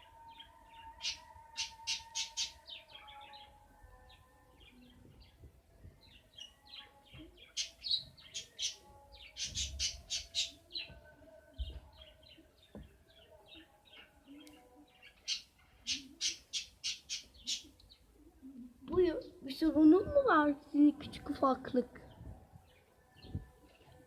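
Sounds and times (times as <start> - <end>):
small bird chirping and squawking: 1.0 - 2.6, 7.5 - 10.6, 15.2 - 17.8.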